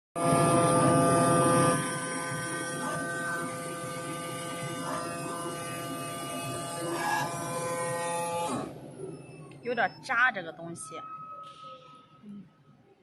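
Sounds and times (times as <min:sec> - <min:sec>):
cutting machine whine: 0:00.2 - 0:10.0.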